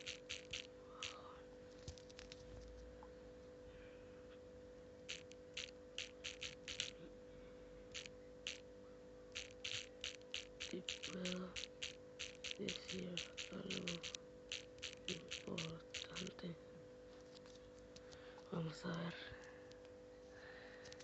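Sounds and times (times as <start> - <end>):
keyboard typing clicks: 0.0 - 1.2, 5.0 - 7.0, 7.9 - 8.6, 9.4 - 16.4
steady electrical hum: 0.0 - 21.0.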